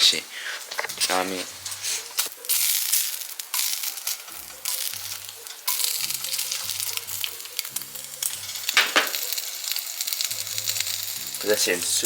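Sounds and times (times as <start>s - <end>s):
food sizzling in a pan: 0.0s - 12.0s
grease popping: 0.0s - 12.0s.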